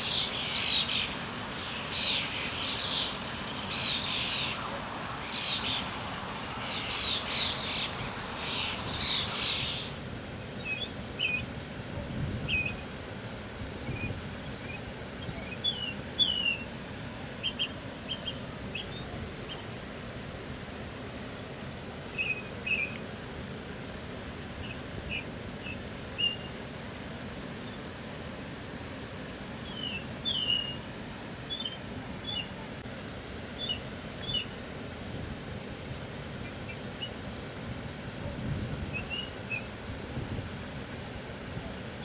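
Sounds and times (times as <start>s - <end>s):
small birds chirping: 0.0s - 10.0s, 13.8s - 16.7s, 24.6s - 26.6s, 27.5s - 30.9s, 33.2s - 37.8s, 38.4s - 42.0s
low background noise: 0.0s - 42.0s.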